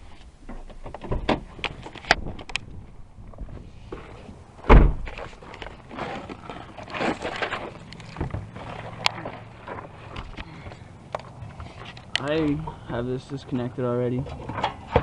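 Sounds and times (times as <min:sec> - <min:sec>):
car parts clattering and rustling: 0:00.0 - 0:13.5, 0:14.1 - 0:15.0
loud thunk: 0:04.7 - 0:05.1.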